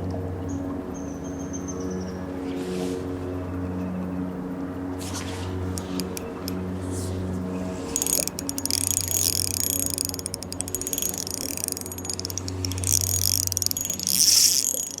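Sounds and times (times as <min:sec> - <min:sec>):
fishing reel drag clicking: 0:05.2 - 0:06.6, 0:07.8 - 0:15.0.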